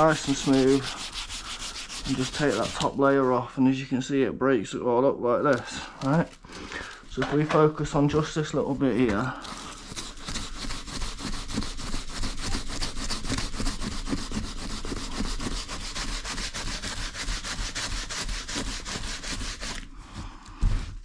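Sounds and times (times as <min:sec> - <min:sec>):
sandpaper scrubbing fabric: 0:00.0 - 0:03.4, 0:09.2 - 0:19.9.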